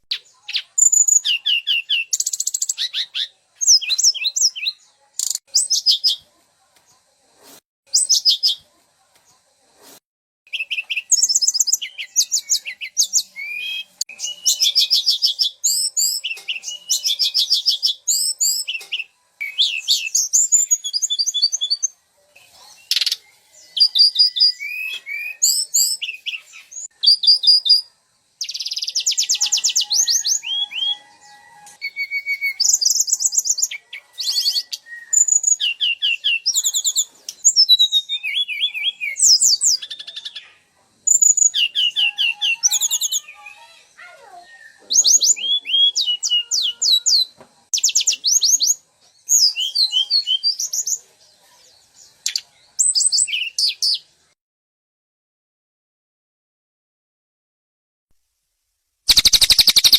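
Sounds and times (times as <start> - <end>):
songbirds calling: 10.5 - 51.0, 59.1 - 59.9.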